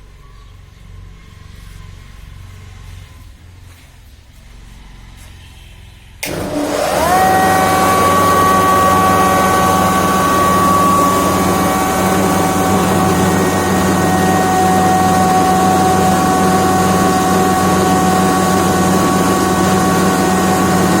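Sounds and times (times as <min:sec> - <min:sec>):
electric grinding mill running: 0:06.2 - 0:21.0.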